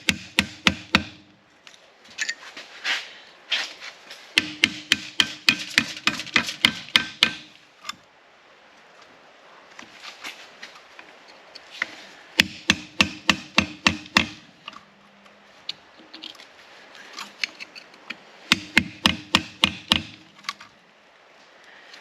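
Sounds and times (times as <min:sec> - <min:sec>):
hammer blows on metal: 0:04.4 - 0:07.5.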